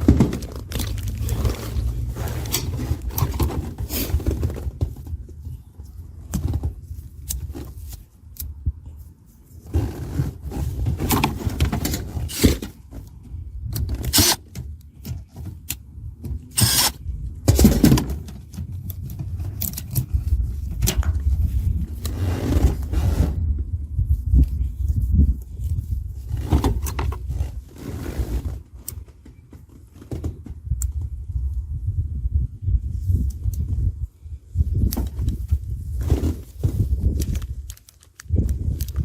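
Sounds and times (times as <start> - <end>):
low rumble: 0.0 - 6.2
tools clicking and scraping hardware: 0.8 - 4.2, 11.0 - 12.8, 13.8 - 14.6, 16.5 - 17.0.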